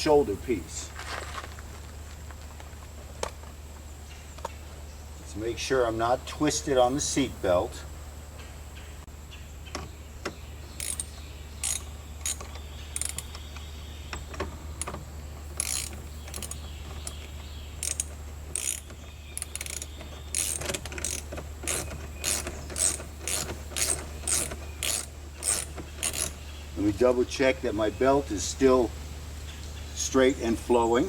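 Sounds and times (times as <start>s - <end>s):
ratchet wrench clicking: 10.8s - 13.4s, 15.5s - 16.6s, 17.8s - 26.4s.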